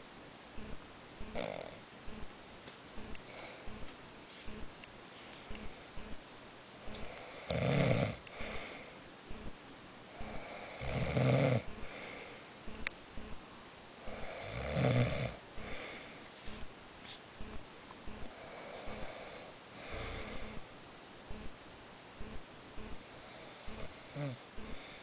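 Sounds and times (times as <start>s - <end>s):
person snoring loudly: 1.3s - 1.8s, 7.0s - 8.8s, 10.2s - 11.7s, 14.0s - 15.9s, 23.4s - 24.4s
soft breathing: 3.0s - 6.2s, 8.2s - 11.0s, 11.6s - 13.4s, 15.5s - 20.7s, 22.2s - 25.0s.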